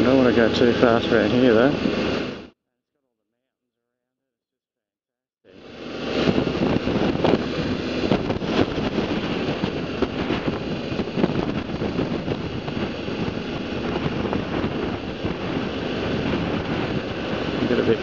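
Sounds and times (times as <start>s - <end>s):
motorcycle engine: 0.0s - 2.6s
wind buffeting microphone: 5.6s - 18.0s.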